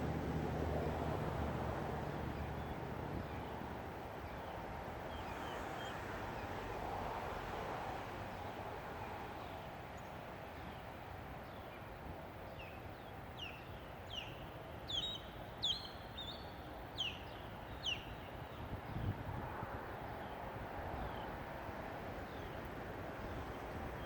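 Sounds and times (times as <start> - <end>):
low background noise: 0.0 - 24.0
bird chirping: 13.4 - 18.4.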